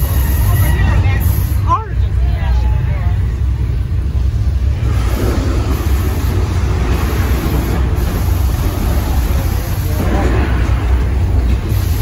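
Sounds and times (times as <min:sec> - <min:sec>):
deep continuous rumble: 0:00.0 - 0:12.0
loud rushing hiss: 0:04.1 - 0:12.0.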